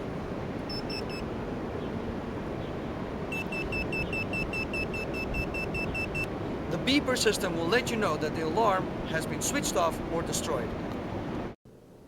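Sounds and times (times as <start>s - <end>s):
rapid high beeps: 3.3s - 6.3s.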